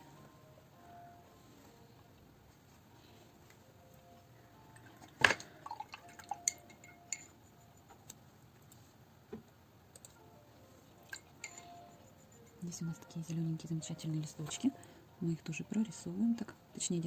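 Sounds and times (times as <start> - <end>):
paintbrush clinking on glass jar: 5.9 - 7.4, 11.1 - 12.6.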